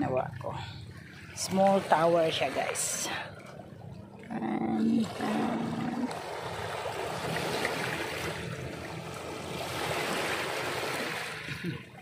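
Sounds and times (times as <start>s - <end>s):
small sea waves washing on shore: 0.0s - 12.0s.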